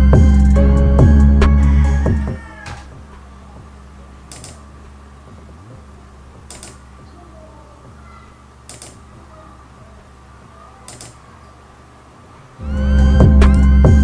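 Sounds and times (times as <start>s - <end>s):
steady low hum: 0.0s - 14.0s
sharp mechanical clicks: 4.2s - 4.8s, 6.4s - 7.0s, 8.6s - 9.2s, 10.8s - 11.4s.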